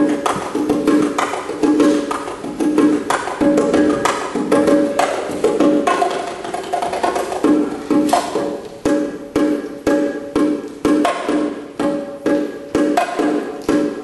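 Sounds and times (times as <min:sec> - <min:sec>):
bongos played by hand: 0:00.0 - 0:14.0.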